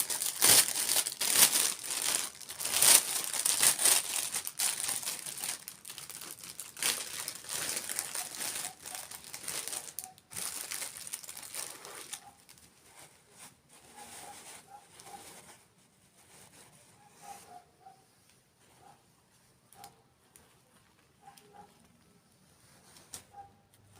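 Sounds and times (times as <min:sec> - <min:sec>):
sweet wrappers crinkling: 0:00.0 - 0:12.7
faint clicks and squeaks: 0:19.7 - 0:22.2.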